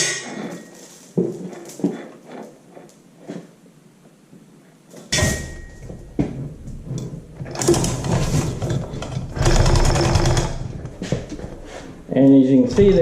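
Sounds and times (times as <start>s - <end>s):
hoist chain rattling and clicking: 7.5s - 10.7s.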